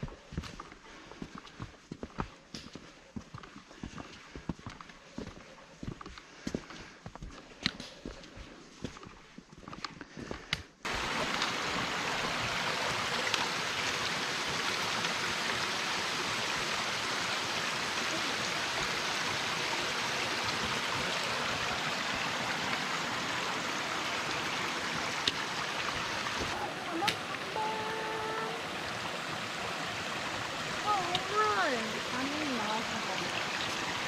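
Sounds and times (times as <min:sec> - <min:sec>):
mountain stream rushing: 0:10.9 - 0:34.0.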